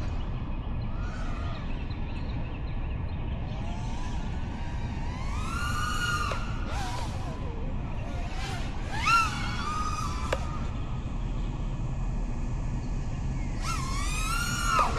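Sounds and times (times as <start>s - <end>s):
quadcopter motors whining: 0.0s - 2.5s, 3.2s - 14.9s.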